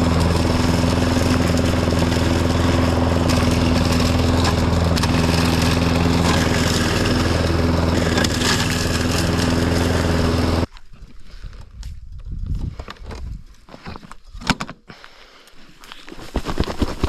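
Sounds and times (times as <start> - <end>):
riding lawn mower engine: 0.0 - 10.7.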